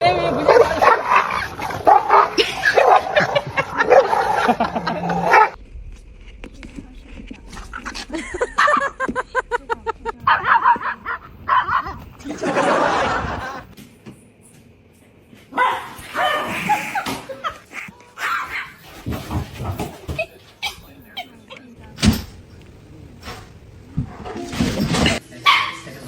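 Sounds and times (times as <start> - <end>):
person laughing: 2.3 - 5.5, 7.8 - 13.7, 16.2 - 17.9
small dog barking and yapping: 10.2 - 12.0, 15.5 - 16.6, 18.2 - 18.9, 25.5 - 25.9.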